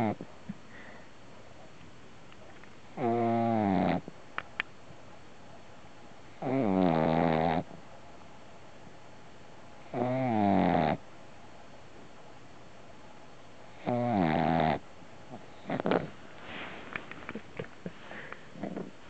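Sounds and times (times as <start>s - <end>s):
puppy snoring: 0.0s - 0.9s, 2.9s - 4.1s, 6.3s - 7.8s, 9.8s - 11.0s, 13.7s - 19.0s.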